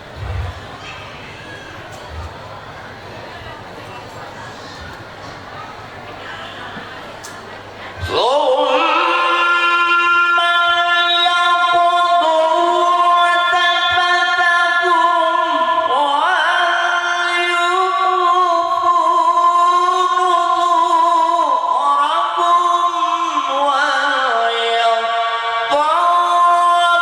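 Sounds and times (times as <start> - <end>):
man reciting melodically: 8.0 - 27.0.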